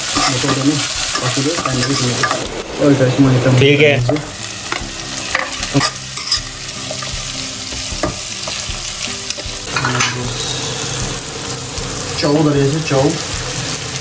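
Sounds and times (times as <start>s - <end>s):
vegetables sizzling in hot oil: 0.0s - 14.0s.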